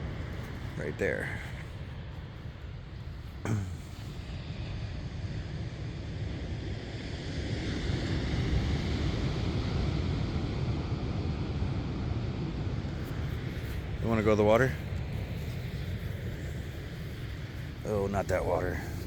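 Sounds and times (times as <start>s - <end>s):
ocean surf on beach: 3.9s - 19.0s.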